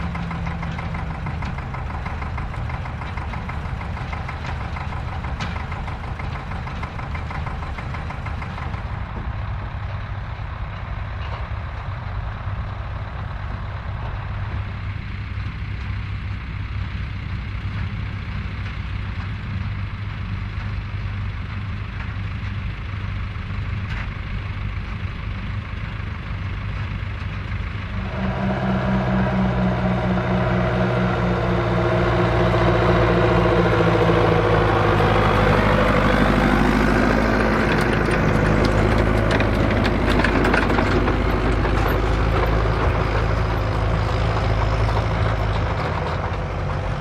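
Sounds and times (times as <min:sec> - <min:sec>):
tractor engine running: 0:00.0 - 0:47.0
droning tone: 0:27.8 - 0:40.4.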